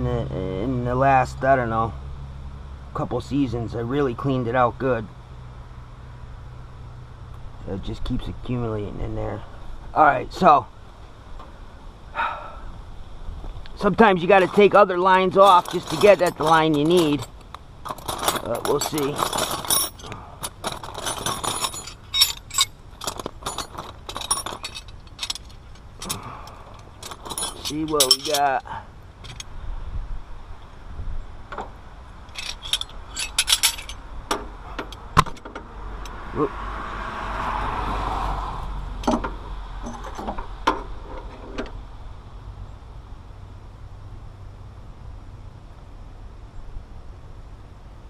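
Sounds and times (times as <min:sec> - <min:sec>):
metal tools clinking on metal: 0:14.4 - 0:29.5, 0:32.2 - 0:35.5, 0:39.0 - 0:40.4.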